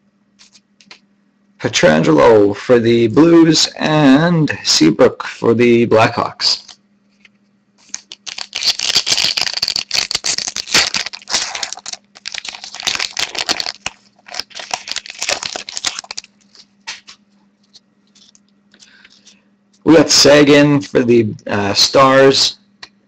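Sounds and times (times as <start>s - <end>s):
faint steady hum: 0.0s - 23.0s
card pack crinkling and rustling: 7.8s - 19.4s.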